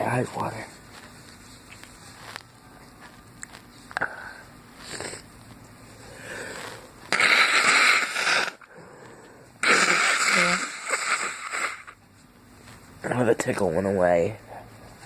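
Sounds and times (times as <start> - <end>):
man breathing harshly: 6.0 - 7.0.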